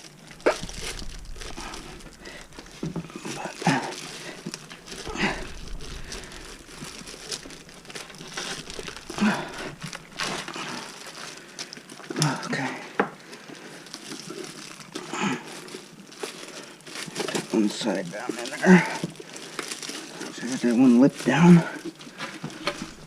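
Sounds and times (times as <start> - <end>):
rubber tire rubbing and scraping: 0.0 - 11.5, 20.0 - 23.0.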